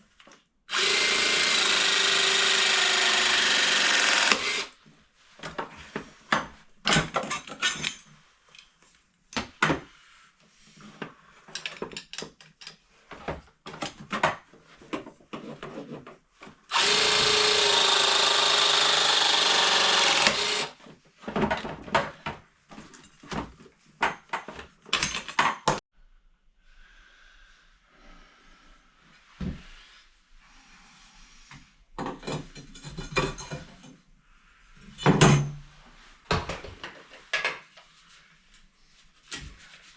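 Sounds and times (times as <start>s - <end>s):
power drill running: 0.7s - 4.8s, 16.7s - 20.8s.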